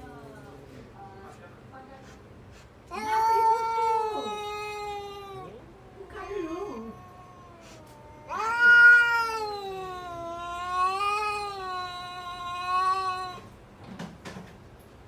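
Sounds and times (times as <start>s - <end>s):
cat yowling: 2.9s - 13.6s.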